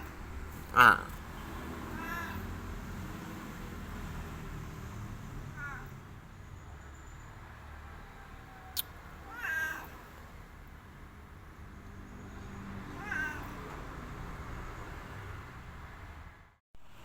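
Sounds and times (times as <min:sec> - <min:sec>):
cat meowing: 0:01.8 - 0:02.7, 0:05.6 - 0:05.9, 0:08.6 - 0:10.1, 0:12.9 - 0:13.8.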